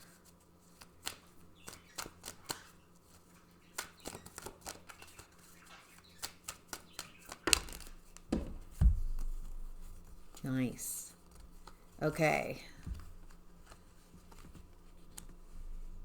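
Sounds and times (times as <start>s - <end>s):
cards flicking and snapping: 0.8s - 2.8s, 3.7s - 5.3s, 6.1s - 10.4s, 12.8s - 15.9s
cards thumping on table: 7.4s - 10.4s, 12.7s - 15.4s.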